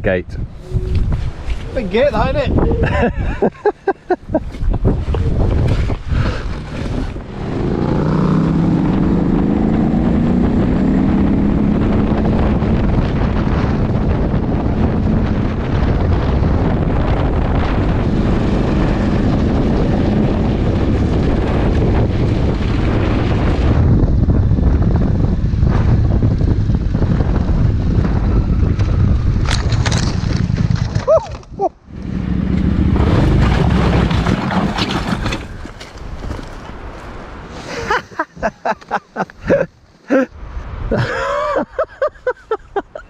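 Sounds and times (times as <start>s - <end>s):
wind noise on microphone: 0.0s - 43.0s
motorcycle engine pulling away: 5.6s - 31.1s, 31.9s - 35.7s.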